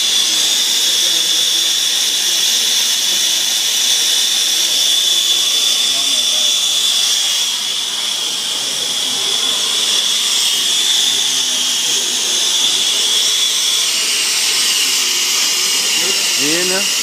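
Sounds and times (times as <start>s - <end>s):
torch flame hissing: 0.0s - 17.0s.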